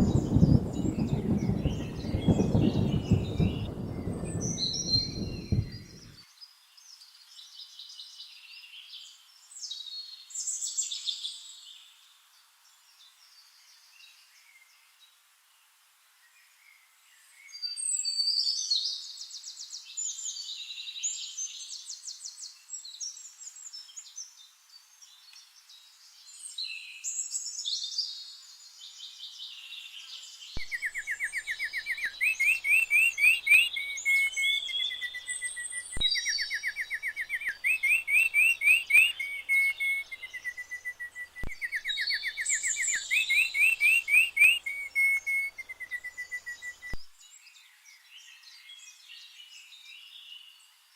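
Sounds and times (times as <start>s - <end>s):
birds singing: 0.0s - 8.0s, 17.5s - 50.8s.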